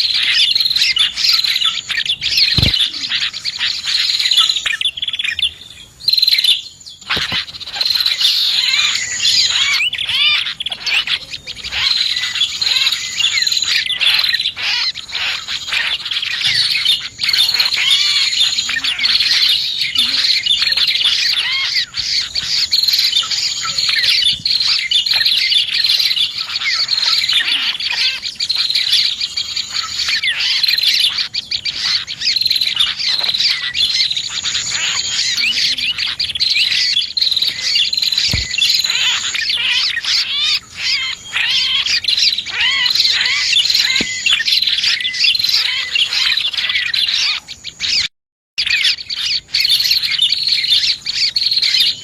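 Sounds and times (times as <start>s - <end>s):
songbirds chirping and trilling: 0.0s - 52.0s.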